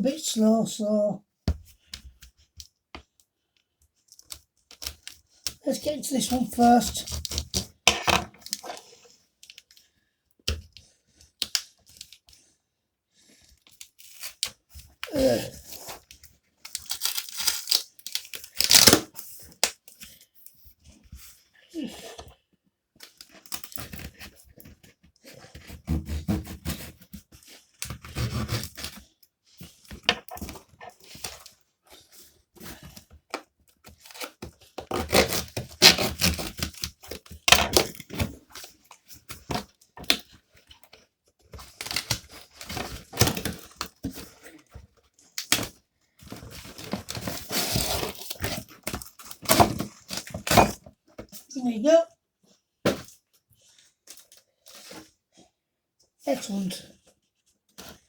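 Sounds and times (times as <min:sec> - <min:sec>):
packaging ripping and rustling: 0:13.8 - 0:19.7, 0:33.8 - 0:40.4, 0:41.5 - 0:50.9.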